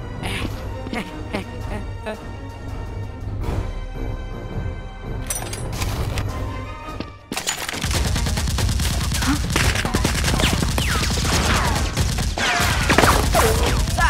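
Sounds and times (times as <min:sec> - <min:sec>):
rapid gunfire: 0:07.7 - 0:14.0.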